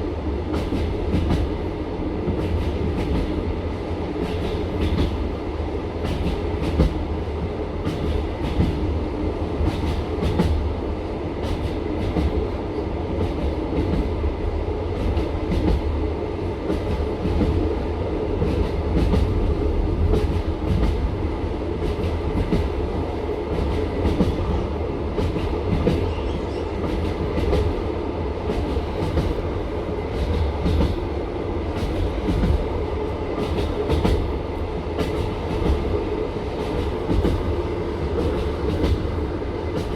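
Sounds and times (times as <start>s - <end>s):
train carriage rumble: 0.0s - 39.9s
train wheels clacking on rail joints: 0.5s - 1.6s, 2.2s - 3.5s, 4.1s - 5.3s, 6.0s - 8.9s, 9.6s - 10.7s, 11.4s - 12.4s, 18.4s - 21.1s, 21.8s - 27.8s, 28.4s - 31.1s, 31.7s - 39.9s.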